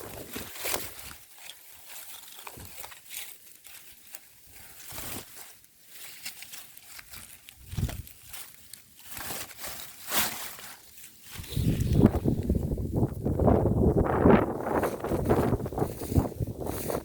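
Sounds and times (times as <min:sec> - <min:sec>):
rustling crackles: 0:00.0 - 0:17.0
gusty wind: 0:11.4 - 0:17.0
wind buffeting microphone: 0:11.4 - 0:17.0.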